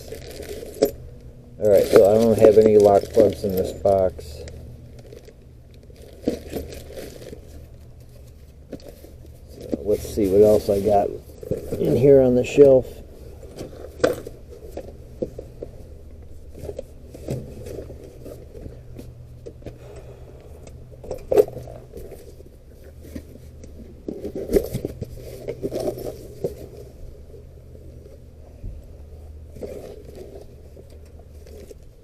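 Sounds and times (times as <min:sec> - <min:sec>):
small parts rattling in boxes: 0:00.0 - 0:15.8, 0:21.0 - 0:27.0
low steady hum: 0:00.0 - 0:32.0.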